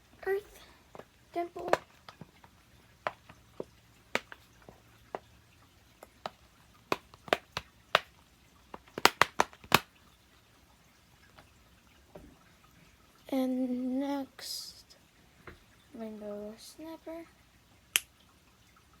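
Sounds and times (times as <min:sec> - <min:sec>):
fidget toy bubbles clicking: 0:08.7 - 0:09.9.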